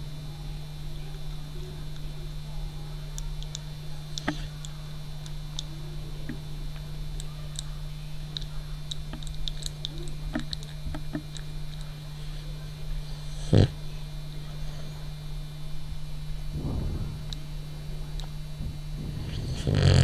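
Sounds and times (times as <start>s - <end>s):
dog snorting: 13.1s - 13.9s, 19.1s - 20.0s.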